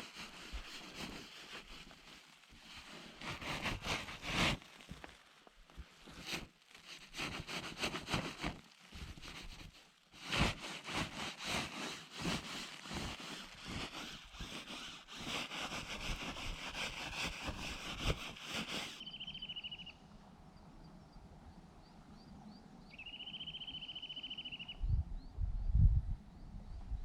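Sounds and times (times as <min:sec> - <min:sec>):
rustling and scraping: 0:00.0 - 0:19.0
sharp crackles and taps: 0:04.8 - 0:06.9.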